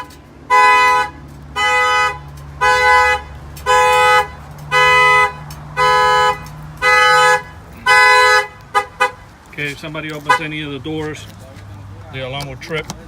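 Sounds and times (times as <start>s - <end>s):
two-note car horn honking: 0.0s - 9.2s.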